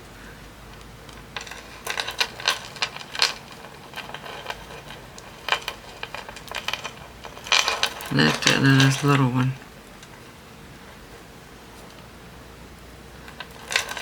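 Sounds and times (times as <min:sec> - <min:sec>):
metal charms clinking: 0:13.3 - 0:14.0.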